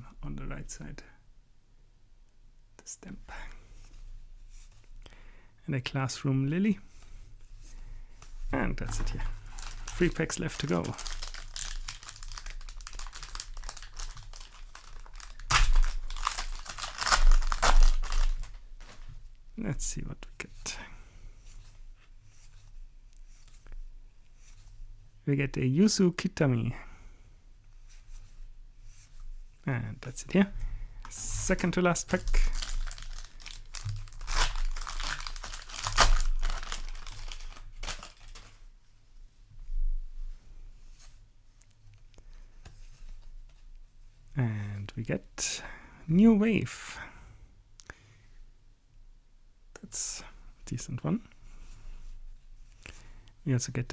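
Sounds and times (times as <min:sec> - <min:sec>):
foil wrapper crinkling: 0:08.8 - 0:19.1, 0:31.0 - 0:38.6.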